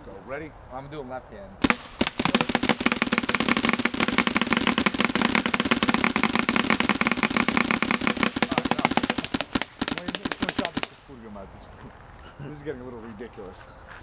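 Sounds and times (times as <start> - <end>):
paintball marker rapid pops: 1.6 - 11.0.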